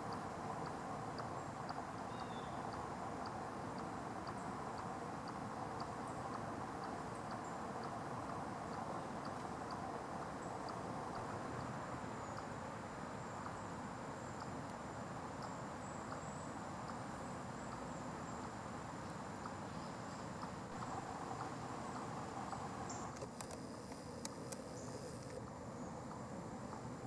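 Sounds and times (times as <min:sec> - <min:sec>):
chipmunk chirping: 0:00.0 - 0:12.5.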